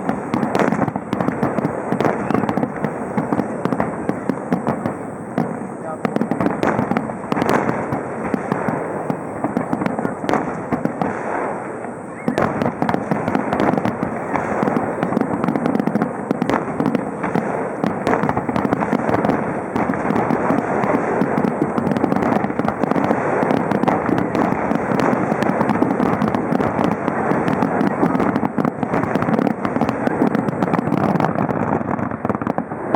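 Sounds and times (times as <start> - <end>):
fireworks bangs and crackles: 0.0 - 32.9.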